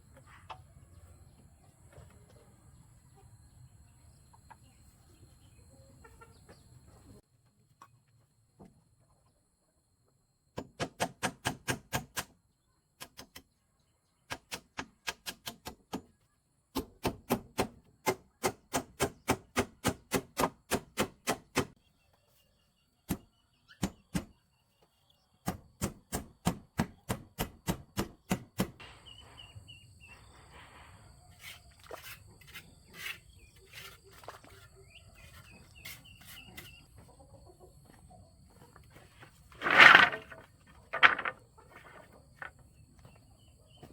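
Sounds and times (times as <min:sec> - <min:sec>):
chicken clucking: 0:00.1 - 0:08.0, 0:34.0 - 0:39.3
small birds chirping: 0:32.6 - 0:39.3.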